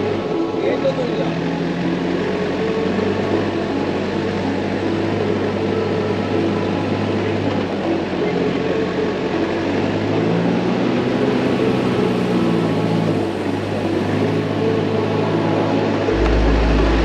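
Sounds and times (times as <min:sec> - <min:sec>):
tyres rumbling on gravel track: 0:00.0 - 0:17.0
vehicle engine hum: 0:00.0 - 0:17.0.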